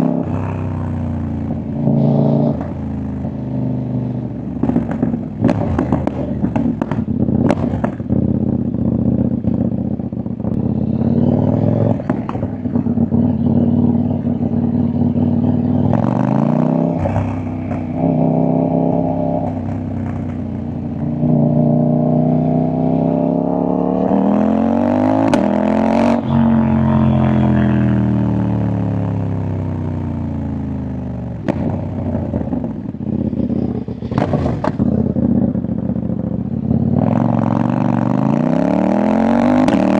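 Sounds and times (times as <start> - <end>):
motorcycle engine revving: 0.0 - 39.9
exhaust pops and crackles: 4.6 - 8.3, 31.4 - 31.8, 34.0 - 35.4.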